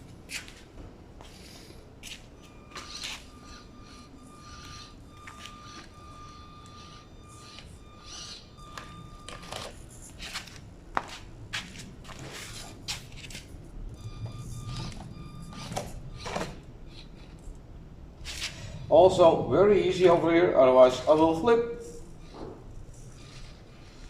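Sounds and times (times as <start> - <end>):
rc crawler electric motor whining: 2.7 - 10.6.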